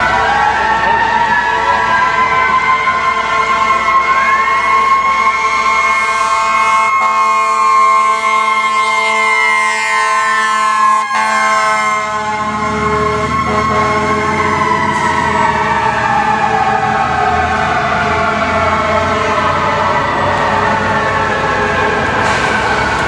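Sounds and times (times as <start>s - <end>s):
fire truck sirens: 0.0s - 23.0s
low truck rumble: 11.5s - 23.0s.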